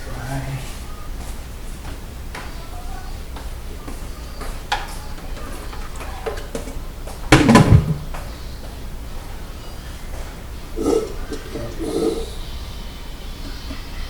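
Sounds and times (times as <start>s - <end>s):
dishes and utensils clicking: 3.4s - 8.3s, 10.1s - 12.3s
loud low thump: 7.3s - 8.3s.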